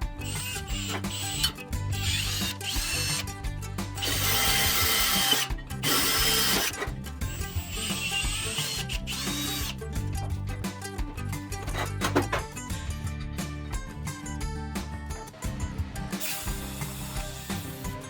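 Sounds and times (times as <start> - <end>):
power tool running: 0.0 - 10.4, 16.0 - 18.0
background music: 0.0 - 18.0.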